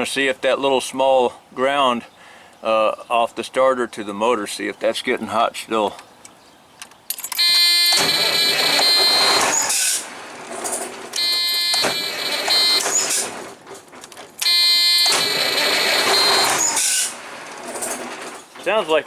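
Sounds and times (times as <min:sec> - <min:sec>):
starter high whine: 0:07.1 - 0:13.6, 0:14.4 - 0:18.4
starter motor cranking engine: 0:07.1 - 0:13.6, 0:14.4 - 0:18.4.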